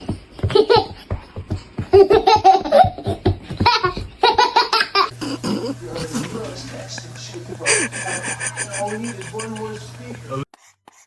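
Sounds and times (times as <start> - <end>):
young child laughing: 0.4 - 1.2, 1.8 - 6.4, 7.6 - 10.4.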